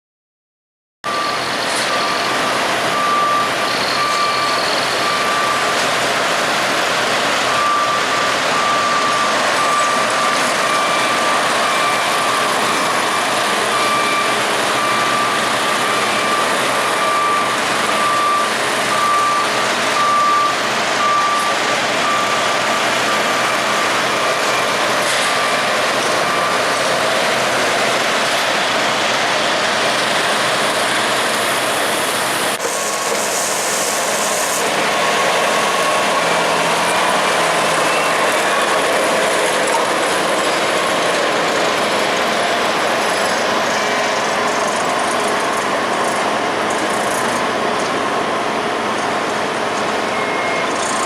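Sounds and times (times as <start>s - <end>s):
backup alarm beeping: 1.1s - 5.8s, 7.4s - 26.8s, 34.8s - 41.0s
diesel machinery running: 1.1s - 51.0s.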